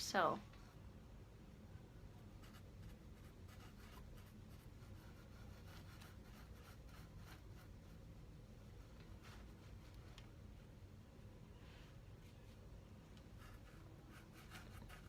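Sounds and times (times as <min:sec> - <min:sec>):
makeup brush scratching powder: 0:02.6 - 0:08.0, 0:13.3 - 0:15.0.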